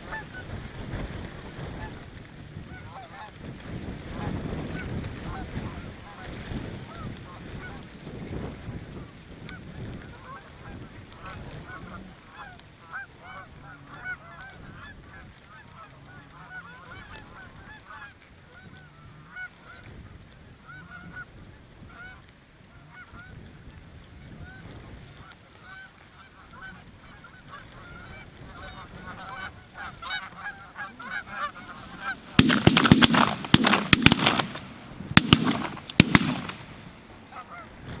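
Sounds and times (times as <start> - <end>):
geese honking: 0.0 - 3.4, 4.0 - 7.8, 10.0 - 19.9, 20.6 - 23.8, 24.4 - 38.0
loud sharp bangs: 31.7 - 37.0.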